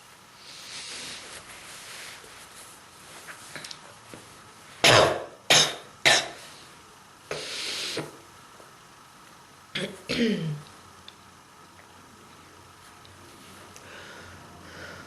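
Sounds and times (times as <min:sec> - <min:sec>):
person coughing hard: 0:04.8 - 0:06.4, 0:09.8 - 0:10.6
breathy exhale: 0:13.8 - 0:15.0.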